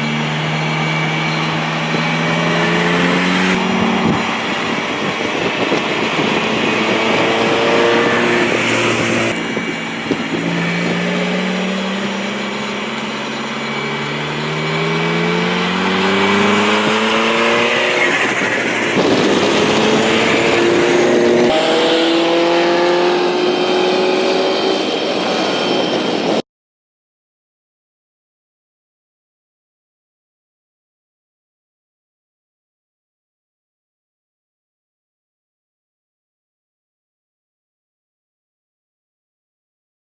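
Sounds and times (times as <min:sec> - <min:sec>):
sports car engine accelerating: 0:00.0 - 0:26.0.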